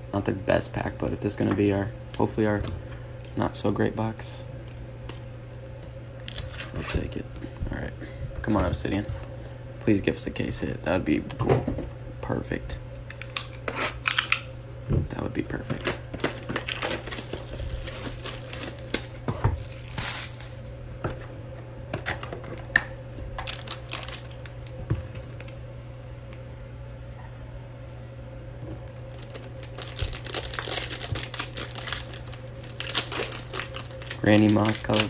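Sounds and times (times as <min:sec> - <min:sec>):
steady low hum: 0:00.0 - 0:35.0
card wrappers crinkling and tearing: 0:06.2 - 0:07.1, 0:15.5 - 0:20.6, 0:22.0 - 0:25.6, 0:28.8 - 0:35.0.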